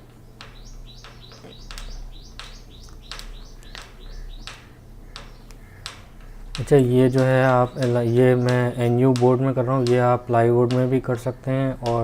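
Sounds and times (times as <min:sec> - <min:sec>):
small bird chirping: 0:00.0 - 0:09.0
sharp clicks: 0:00.0 - 0:12.0.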